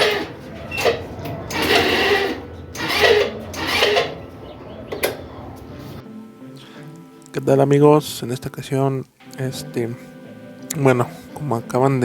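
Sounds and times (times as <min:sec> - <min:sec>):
scooter starter motor grinding: 0:00.0 - 0:06.0.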